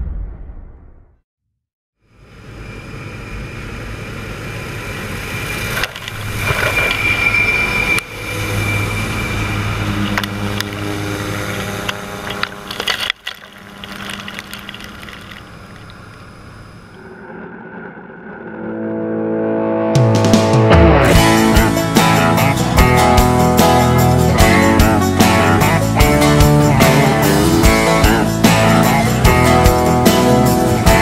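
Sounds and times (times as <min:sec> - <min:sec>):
harvest machinery running: 0:04.2 - 0:16.8.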